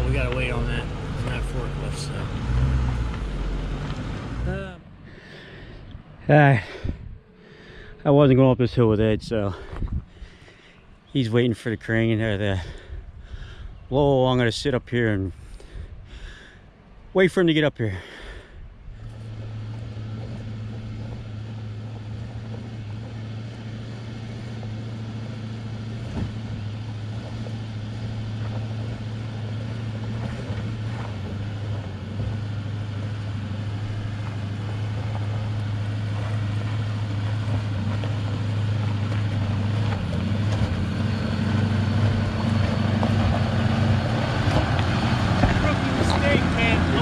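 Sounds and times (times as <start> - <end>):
truck engine running under load: 0.0 - 5.9, 19.0 - 47.0.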